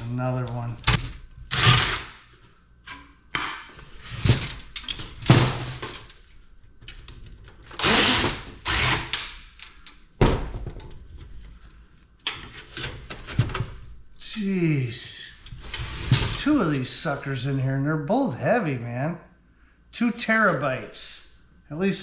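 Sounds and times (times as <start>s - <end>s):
power screwdriver running: 1.5s - 2.2s, 7.8s - 9.2s.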